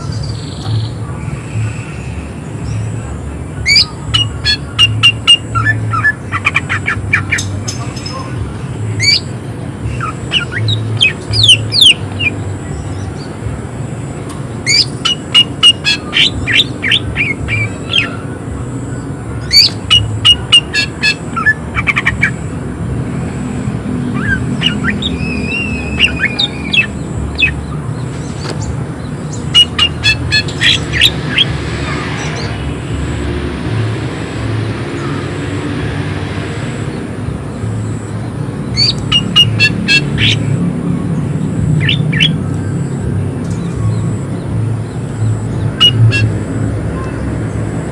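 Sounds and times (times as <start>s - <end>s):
bird singing harsh repeated notes: 0.0s - 47.9s.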